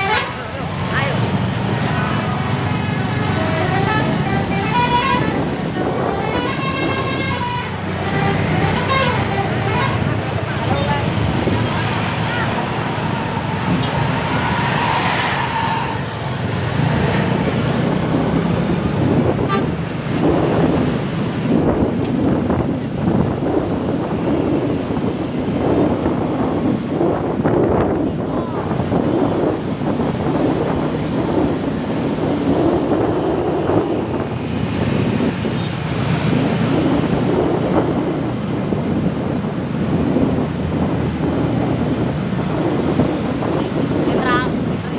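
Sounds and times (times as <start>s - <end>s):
bus horn tones: 0.0s - 0.6s, 3.2s - 10.2s, 19.4s - 19.8s
dense rumble: 0.0s - 44.9s
road traffic engines: 0.0s - 44.9s
wind buffeting microphone: 0.0s - 44.9s.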